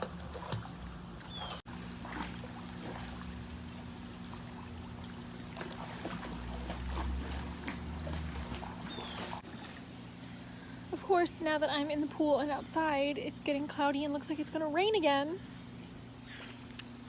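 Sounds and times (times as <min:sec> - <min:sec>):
small water splashes: 0:00.0 - 0:09.9
water trickling and lapping: 0:00.0 - 0:10.7
steady low hum: 0:00.0 - 0:17.0.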